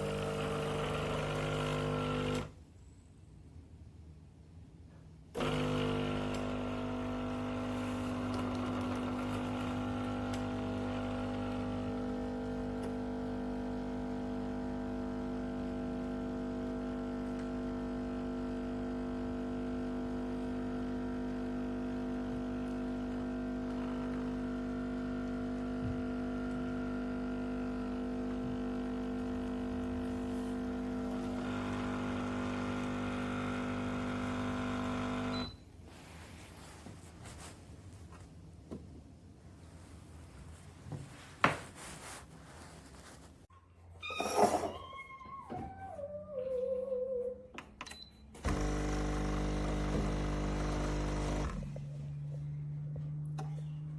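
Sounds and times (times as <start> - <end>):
espresso machine pump humming: 0.0 - 2.5, 5.4 - 35.4, 48.4 - 51.9.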